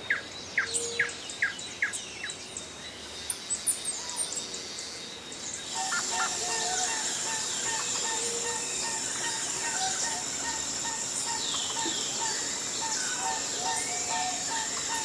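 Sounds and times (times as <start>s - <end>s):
high-pitched insect drone: 3.4s - 15.0s.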